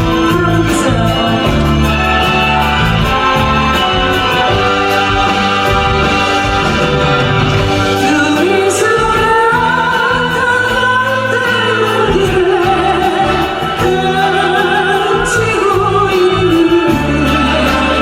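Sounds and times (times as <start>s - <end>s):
instrumental accompaniment: 0.0s - 18.0s.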